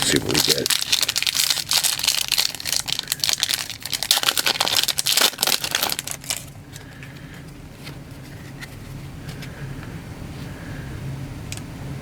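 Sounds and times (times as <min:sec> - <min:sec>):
foil wrappers crinkling and tearing: 0:00.0 - 0:07.0.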